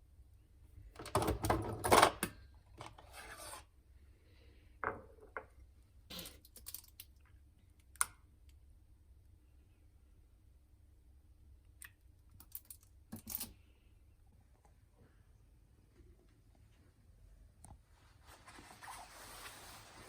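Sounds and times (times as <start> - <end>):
rustling handling noise: 17.9 - 20.0.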